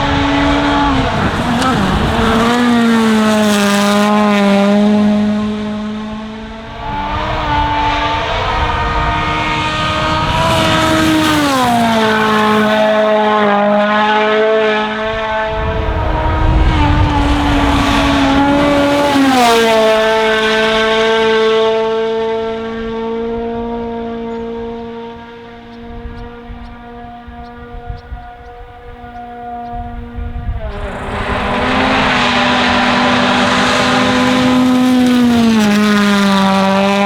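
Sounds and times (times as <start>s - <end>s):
rally car engine revving high: 0.0s - 37.0s
loud rush of noise: 30.6s - 35.2s.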